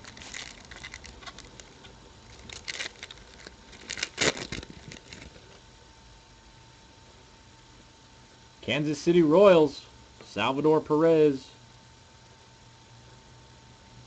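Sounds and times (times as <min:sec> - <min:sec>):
cards rustling: 0:00.0 - 0:05.6
plastic wrapping crinkling and tearing: 0:00.0 - 0:05.6.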